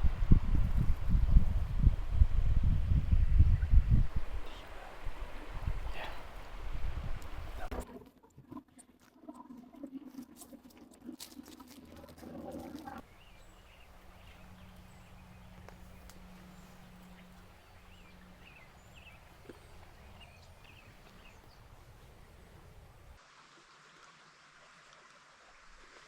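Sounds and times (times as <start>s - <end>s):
steady outdoor hiss: 0.0s - 7.8s, 11.8s - 26.0s
footsteps crunching on dry ground: 10.4s - 22.0s
small birds chirping: 13.0s - 22.8s.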